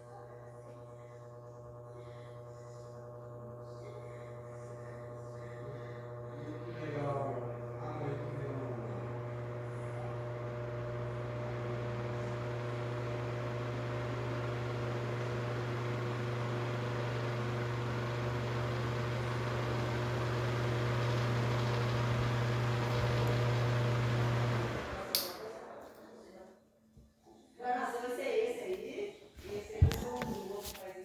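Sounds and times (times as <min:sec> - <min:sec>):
electric fan running: 0:00.0 - 0:25.7, 0:29.4 - 0:30.9.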